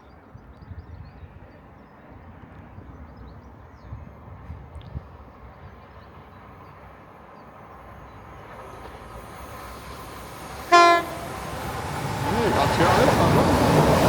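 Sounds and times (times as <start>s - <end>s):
diesel train rumble: 5.3s - 14.0s
train horn toot: 10.7s - 11.6s.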